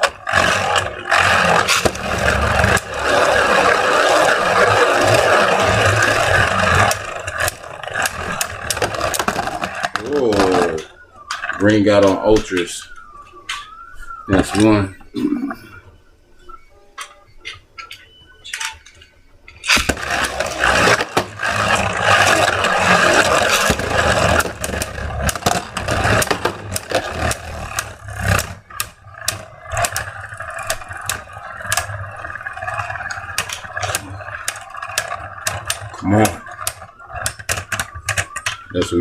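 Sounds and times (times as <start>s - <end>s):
scattered clicks: 0.0s - 13.9s, 17.0s - 38.9s
spinning tops whirring and clacking: 0.0s - 14.7s, 19.6s - 39.0s.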